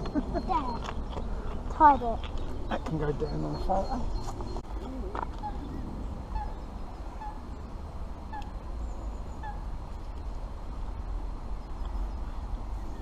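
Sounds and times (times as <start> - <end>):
bird calling: 0.0 - 9.8
steady low rumble: 0.0 - 13.0.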